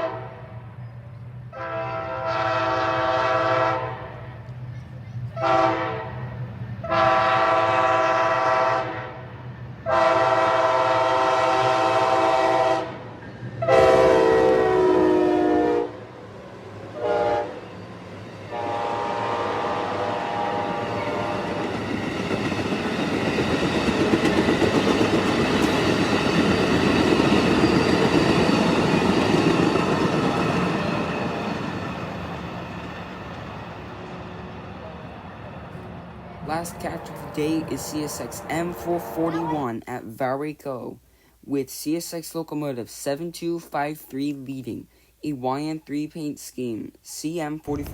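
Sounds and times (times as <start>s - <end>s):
train horn blasts: 0.0s - 0.8s, 1.5s - 4.4s, 5.4s - 16.1s, 17.0s - 17.7s, 18.5s - 21.6s
train wheels clattering on rails: 20.7s - 33.4s.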